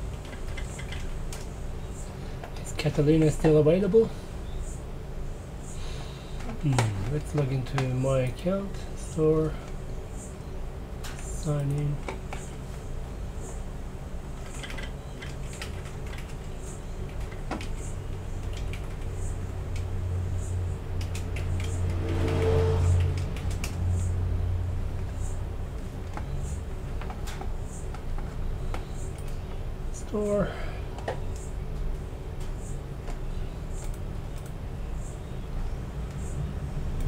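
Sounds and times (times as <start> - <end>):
low hum: 0.0 - 37.0
keyboard and mouse clicks: 0.1 - 1.5, 14.4 - 19.1, 21.0 - 24.1.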